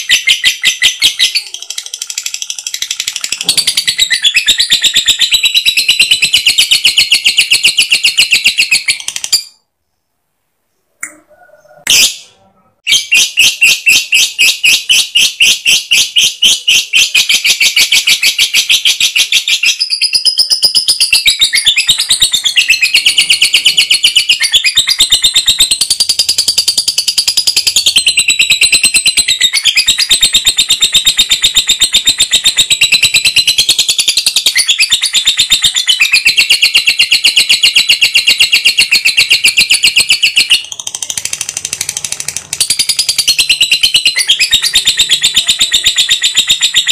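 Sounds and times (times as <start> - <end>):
bird chattering trill: 12.8 - 41.3.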